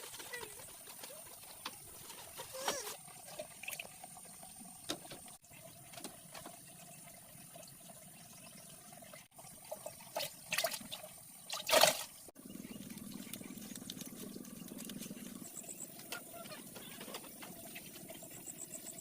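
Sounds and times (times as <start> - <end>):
water splashing: 1.0 - 8.0, 9.0 - 15.5
steady low hum: 12.3 - 19.0.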